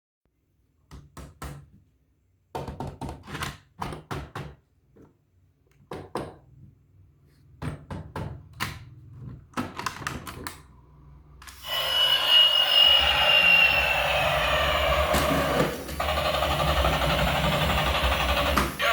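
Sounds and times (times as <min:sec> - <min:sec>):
plastic toys clicking and knocking: 0:02.5 - 0:06.4, 0:07.6 - 0:10.7.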